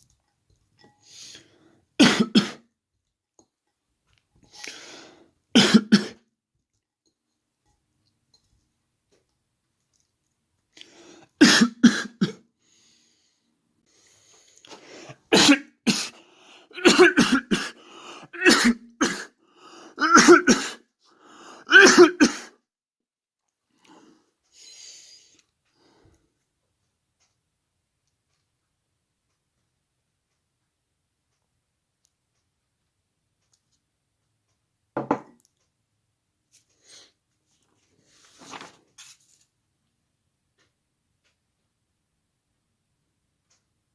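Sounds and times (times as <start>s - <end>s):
person coughing: 2.0s - 2.6s, 5.6s - 6.2s, 11.4s - 12.4s, 15.3s - 19.4s, 20.0s - 20.8s, 21.7s - 22.6s.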